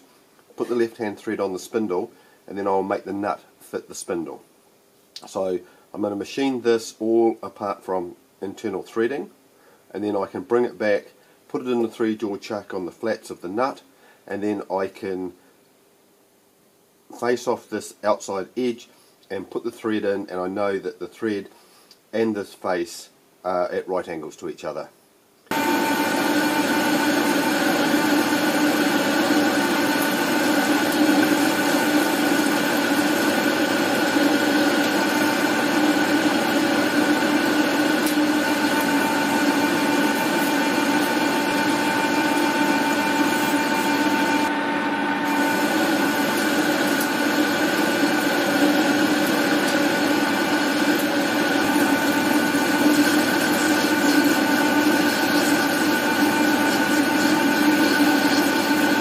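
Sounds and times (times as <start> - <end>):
metal lathe running: 25.5 - 59.0.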